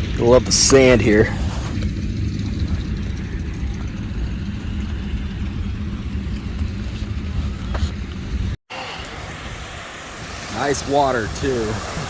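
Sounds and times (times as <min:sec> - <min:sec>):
wind buffeting microphone: 0:00.0 - 0:12.0
surf washing: 0:08.7 - 0:12.0.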